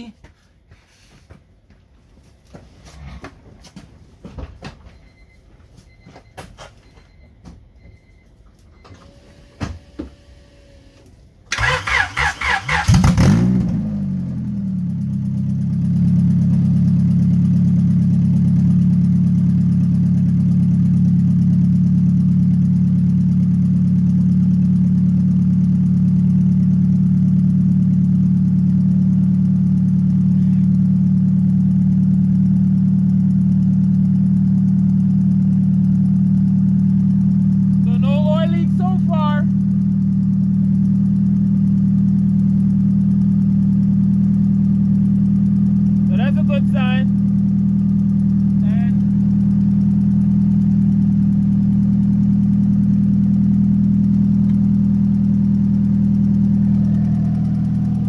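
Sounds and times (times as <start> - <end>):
engine idling: 11.4 - 58.0
engine cranking and starting: 11.5 - 13.6
engine revving: 11.5 - 18.8, 44.7 - 58.0.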